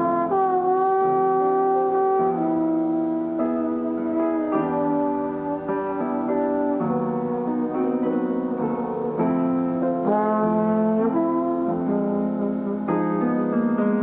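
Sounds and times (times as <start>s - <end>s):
piano chords: 0.0s - 14.0s
trombone melody: 0.0s - 14.0s.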